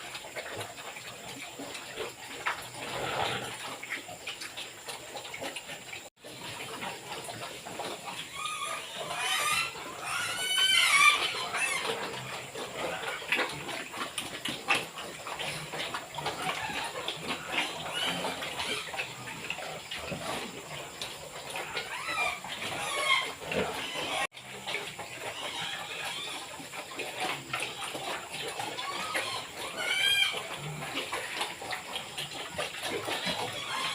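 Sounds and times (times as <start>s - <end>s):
pigs squealing and grunting: 0.0s - 33.9s.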